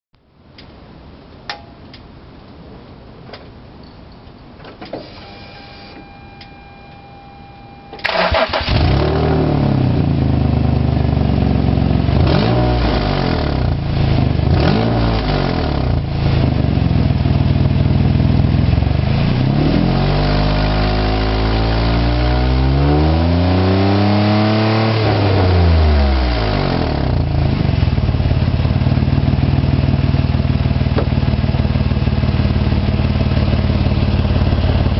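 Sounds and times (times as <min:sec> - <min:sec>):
faint steady tone: 0:03.8 - 0:08.1
car engine starting and revving: 0:08.0 - 0:17.6, 0:18.4 - 0:34.9.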